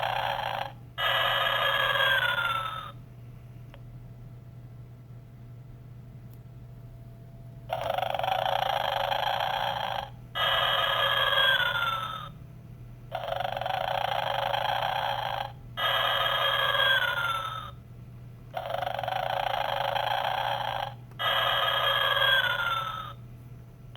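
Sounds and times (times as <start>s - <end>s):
recorded snoring from small speaker: 0.0s - 3.0s, 7.7s - 12.3s, 13.1s - 17.8s, 18.5s - 23.2s
steady low hum: 0.0s - 23.9s.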